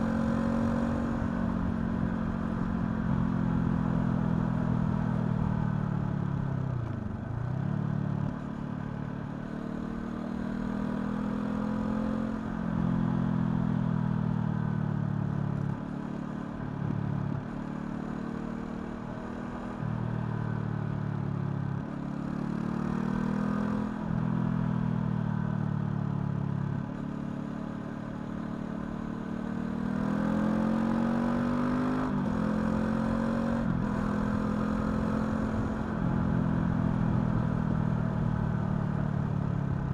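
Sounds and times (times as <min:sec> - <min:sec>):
motorcycle engine revving: 0:29.1 - 0:39.0.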